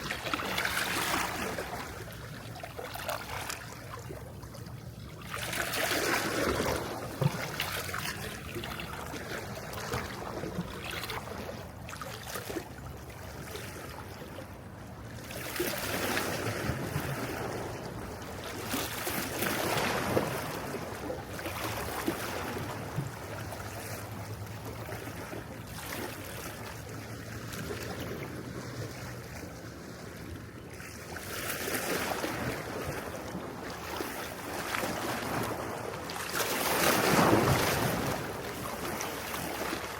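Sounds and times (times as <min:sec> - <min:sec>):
sea waves washing onto shore: 0:00.0 - 0:02.6, 0:31.6 - 0:39.9.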